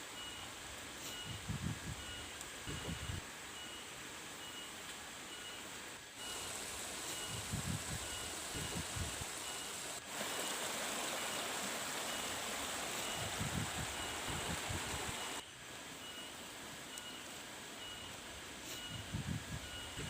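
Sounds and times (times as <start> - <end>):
faint high chirp: 2.0 - 6.5, 15.2 - 20.0
flowing water rushing: 6.2 - 15.4.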